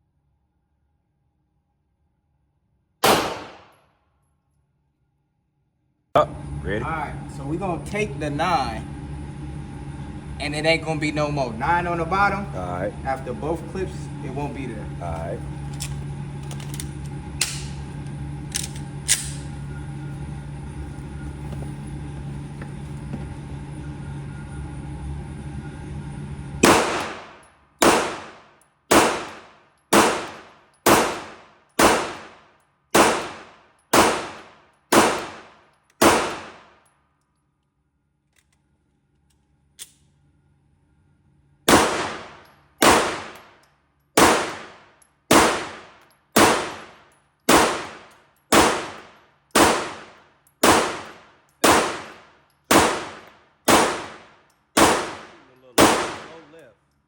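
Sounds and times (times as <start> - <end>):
low hum: 3.0 - 3.8, 6.2 - 57.0
pistol shots: 3.0 - 3.8, 26.6 - 36.8, 41.7 - 43.5, 44.2 - 56.5.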